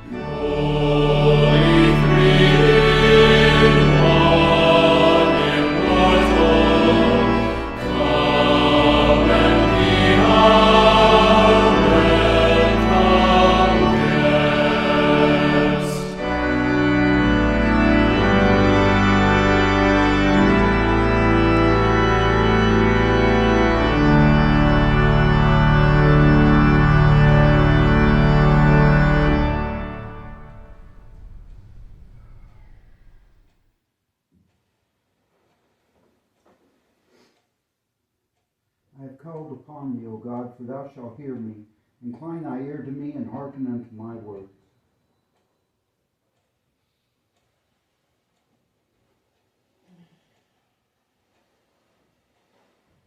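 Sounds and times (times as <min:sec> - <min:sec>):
choir singing: 0:00.0 - 0:33.3
organ chords: 0:00.0 - 0:33.5.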